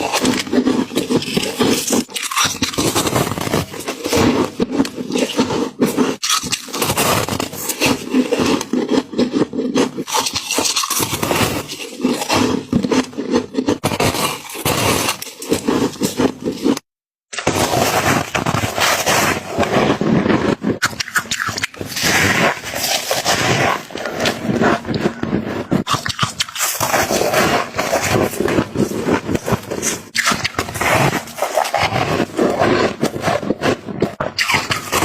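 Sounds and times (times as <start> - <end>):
frost being crunched and chewed: 0.0 - 3.2, 6.2 - 7.7, 8.6 - 16.7, 20.8 - 22.0, 25.8 - 27.0.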